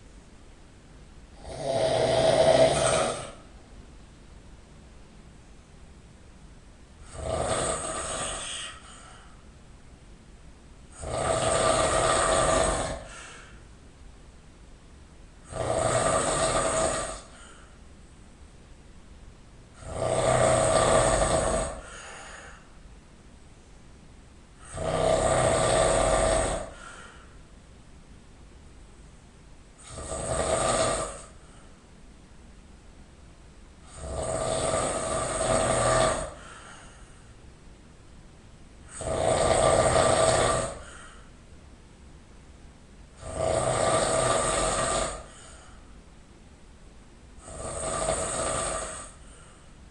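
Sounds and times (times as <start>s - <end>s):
person snoring loudly: 1.3s - 3.5s, 7.0s - 9.2s, 10.9s - 13.6s, 15.4s - 17.7s, 19.7s - 22.7s, 24.6s - 27.2s, 29.8s - 31.6s, 33.8s - 36.9s, 38.9s - 41.3s, 43.2s - 45.8s, 47.4s - 49.6s.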